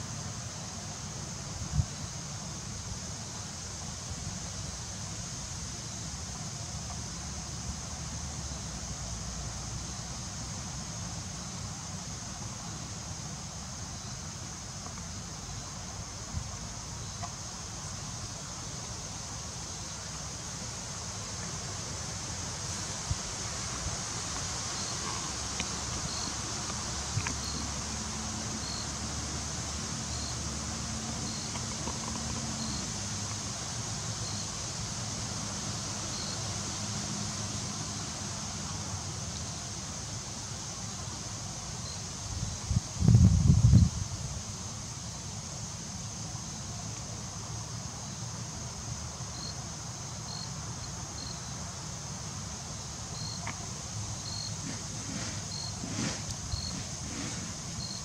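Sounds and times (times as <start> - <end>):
outdoor background hiss: 0.0 - 58.0
wind rumble on microphone: 42.3 - 44.4.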